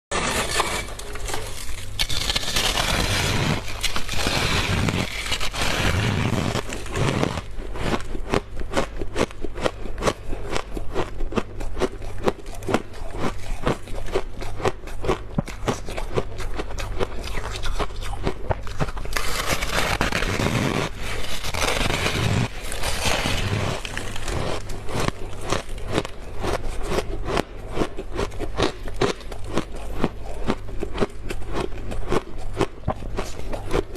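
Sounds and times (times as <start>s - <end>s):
rough scraping of frost: 0.1s - 8.0s, 18.9s - 26.8s
frost crunching and crackling: 0.1s - 33.9s.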